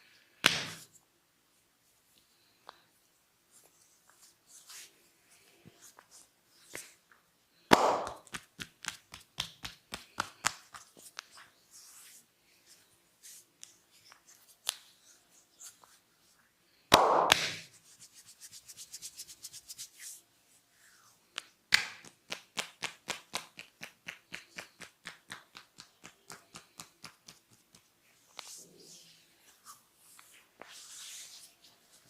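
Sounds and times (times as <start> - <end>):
hands striking during massage: 0.4 - 0.8, 7.7 - 10.9, 16.9 - 17.7, 21.4 - 27.8.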